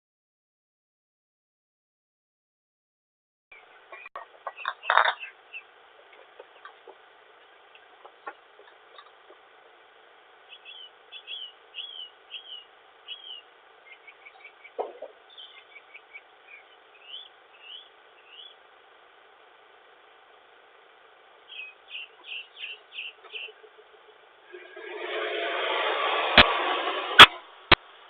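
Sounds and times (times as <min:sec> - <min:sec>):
steady microphone hiss: 0:03.6 - 0:28.0
faint bird chirps: 0:10.5 - 0:18.6, 0:21.5 - 0:24.2.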